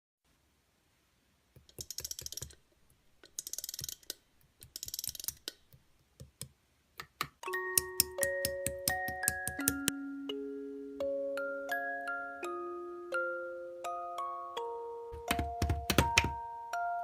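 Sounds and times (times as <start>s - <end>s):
music with chiming mallet notes: 7.4s - 17.0s.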